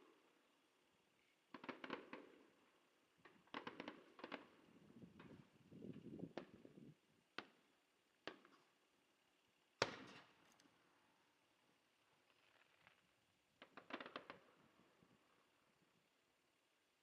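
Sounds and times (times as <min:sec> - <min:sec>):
distant fireworks bursts: 0:01.5 - 0:06.7, 0:13.6 - 0:15.3.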